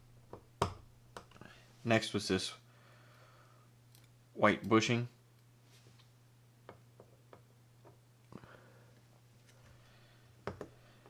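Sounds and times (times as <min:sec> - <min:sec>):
low steady hum: 0:00.0 - 0:11.0
small parts clicking and tapping: 0:03.9 - 0:04.2.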